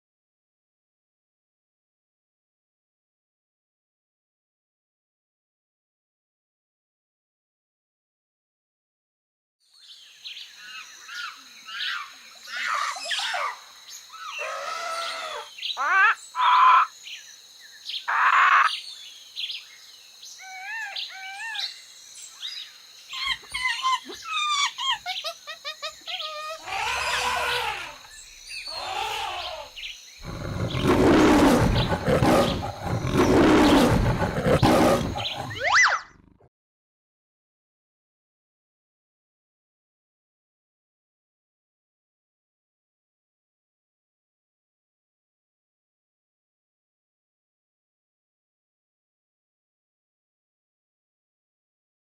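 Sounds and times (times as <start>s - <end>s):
lion roar: 26.6s - 28.0s, 28.7s - 36.5s
cartoon whistles and chirps: 35.3s - 36.2s.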